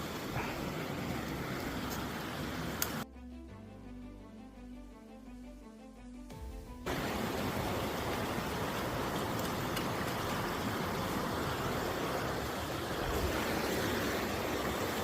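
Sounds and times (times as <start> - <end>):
waterfall rushing: 0.0 - 3.0, 6.9 - 15.0.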